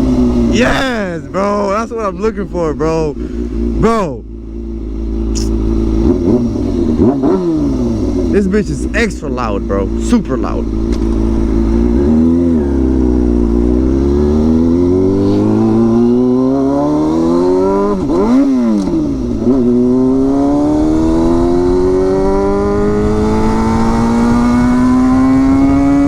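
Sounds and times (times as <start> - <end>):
loud motorcycle exhaust revving: 3.2 - 8.6, 10.6 - 26.0.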